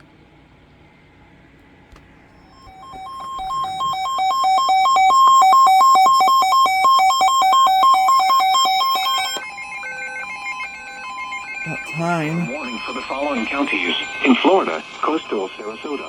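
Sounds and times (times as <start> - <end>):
electronic alert melody: 11.7 - 12.6.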